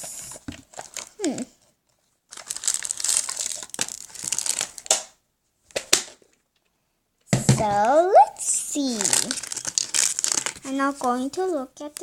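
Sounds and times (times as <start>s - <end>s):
packaging crinkling: 0.3s - 1.5s, 2.3s - 5.1s, 8.9s - 10.8s.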